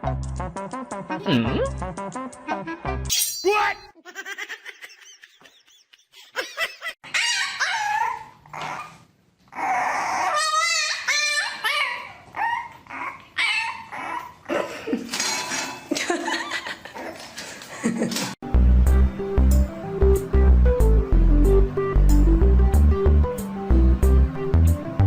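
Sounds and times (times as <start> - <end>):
dog whining and yipping: 7.0 - 14.4.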